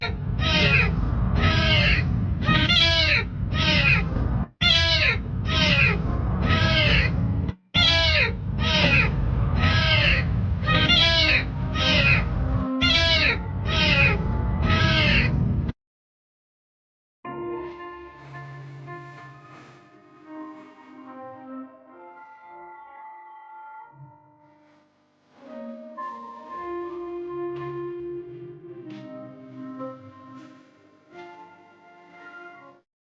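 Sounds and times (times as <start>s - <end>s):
low rumbling noise: 0.0s - 15.7s
cat meowing loudly: 0.4s - 4.0s, 4.6s - 7.1s, 7.8s - 12.2s, 12.8s - 15.3s.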